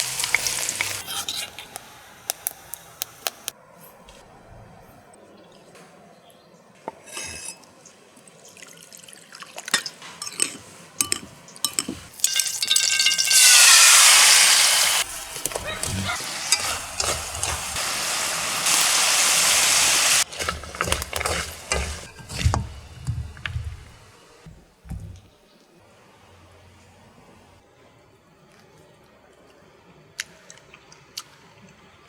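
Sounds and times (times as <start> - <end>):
utensil clinking and scraping a pan: 0.0 - 3.5, 9.7 - 25.3
corn sizzling in a pan: 0.0 - 3.6, 11.7 - 24.5.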